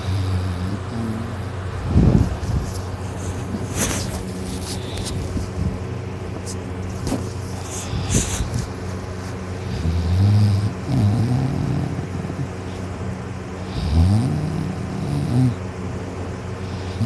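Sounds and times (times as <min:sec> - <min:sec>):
steady low hum: 0:00.0 - 0:17.0
person snoring: 0:09.6 - 0:12.5, 0:13.7 - 0:15.6, 0:16.7 - 0:17.0.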